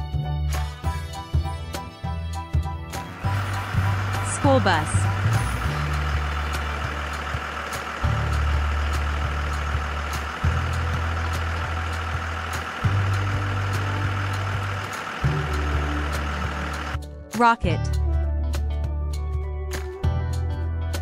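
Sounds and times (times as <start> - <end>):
bus engine idling: 0.6 - 17.0.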